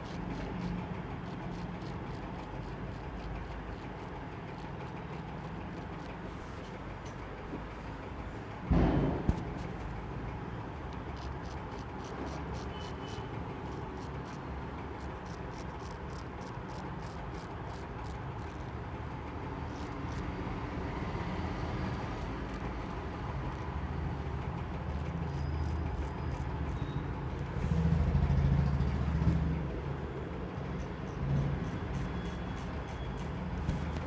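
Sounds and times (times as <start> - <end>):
road traffic rumbling: 0.0 - 34.0.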